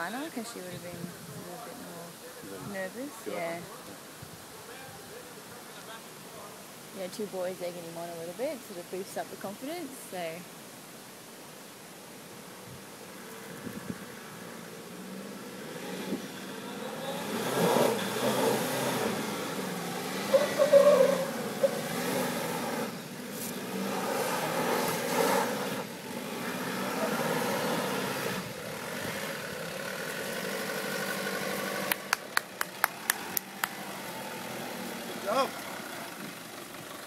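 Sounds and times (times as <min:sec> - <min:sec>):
truck engine revving: 0:13.4 - 0:37.0.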